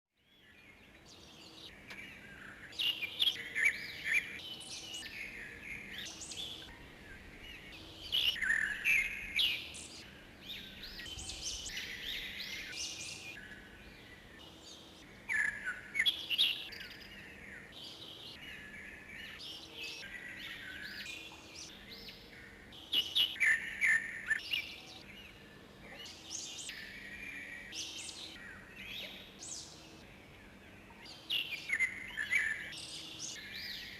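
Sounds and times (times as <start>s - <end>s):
songbirds chirping and twittering: 0.1s - 33.9s.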